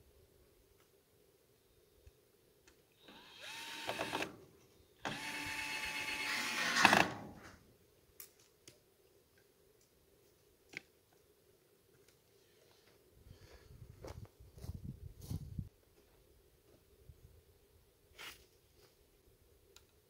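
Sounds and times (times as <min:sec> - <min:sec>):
cordless drill motor whine: 0:03.0 - 0:04.3, 0:05.0 - 0:07.0.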